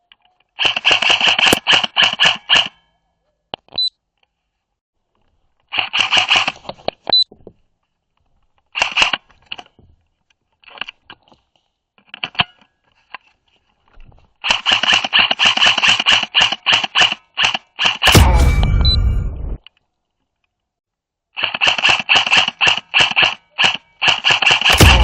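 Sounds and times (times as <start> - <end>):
airsoft rifle shots: 0.6 - 2.7, 14.5 - 19.3, 21.4 - 25.0.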